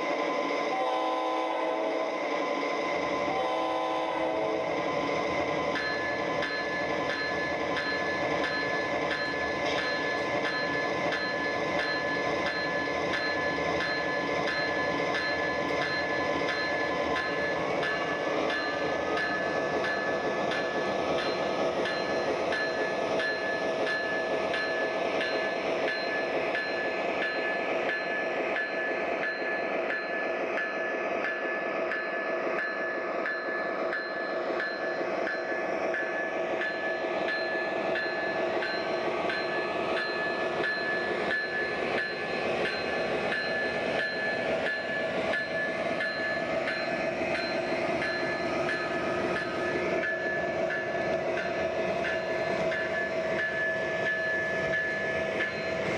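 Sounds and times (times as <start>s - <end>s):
model train engine sound: 0.0s - 55.9s
wheels clicking on track: 4.1s - 55.9s.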